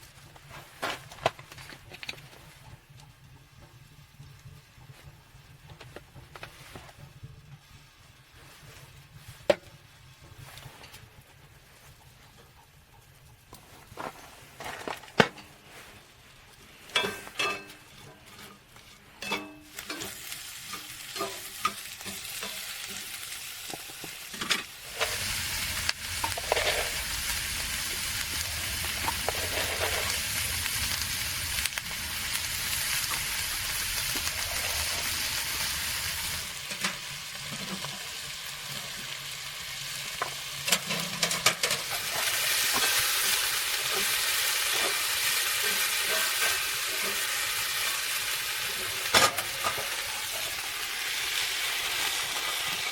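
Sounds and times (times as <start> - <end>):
food sizzling in a pan: 15.6 - 52.9.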